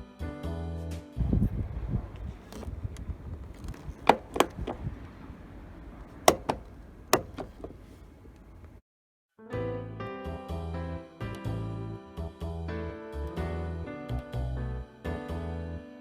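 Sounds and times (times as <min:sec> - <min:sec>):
car door clacks: 0:02.0 - 0:08.8.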